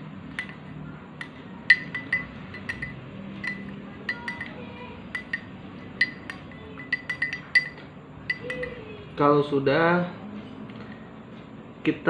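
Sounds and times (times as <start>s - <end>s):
spoon clinking in cup: 0.3s - 8.8s.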